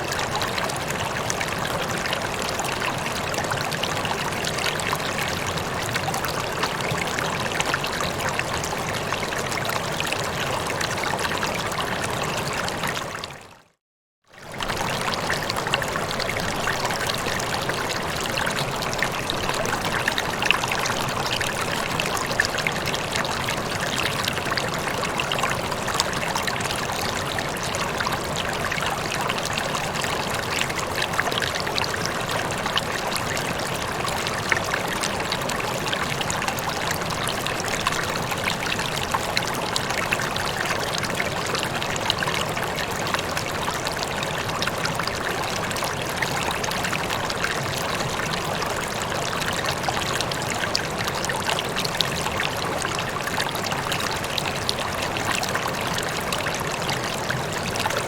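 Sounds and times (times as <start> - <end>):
water trickling and babbling: 0.0 - 58.0.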